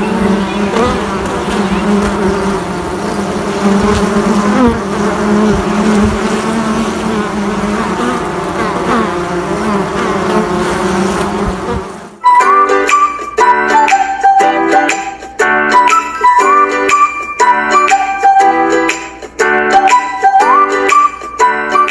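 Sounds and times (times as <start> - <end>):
bees buzzing: 0.0 - 12.2.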